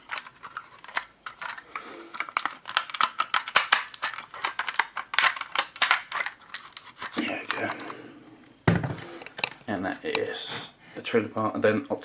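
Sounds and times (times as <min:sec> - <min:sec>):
plastic toy parts clicking: 0:00.0 - 0:07.9.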